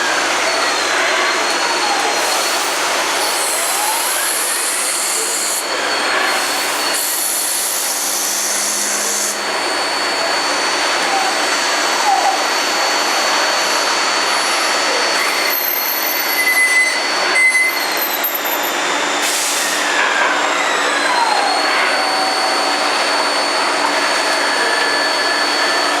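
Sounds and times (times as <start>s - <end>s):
high whine: 0.0s - 19.2s
cnc machine machining metal: 0.0s - 26.0s.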